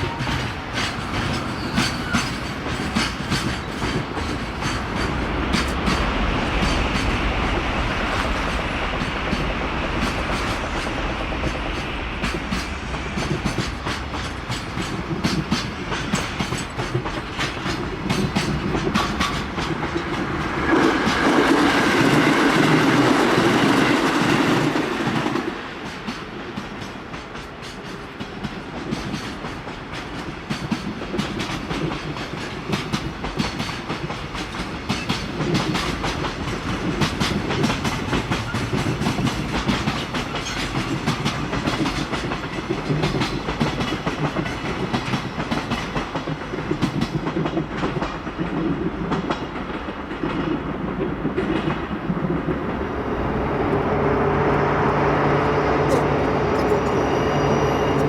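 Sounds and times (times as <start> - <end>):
freight train wheels clattering: 0.0 - 58.0
train rumble: 0.0 - 58.0.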